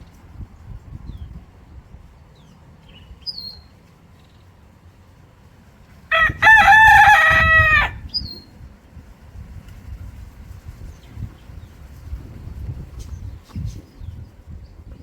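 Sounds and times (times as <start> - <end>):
rooster crowing: 6.1 - 8.0.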